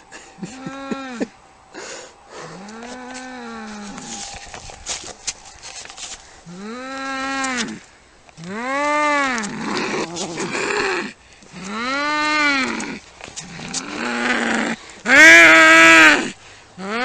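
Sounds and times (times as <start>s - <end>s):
cat growling: 8.4s - 17.0s.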